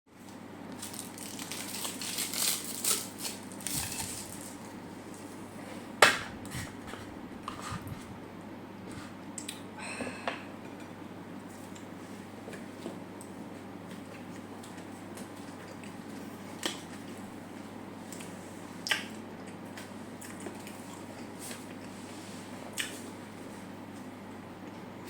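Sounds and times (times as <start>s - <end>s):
fried food crunching: 0.7s - 5.2s.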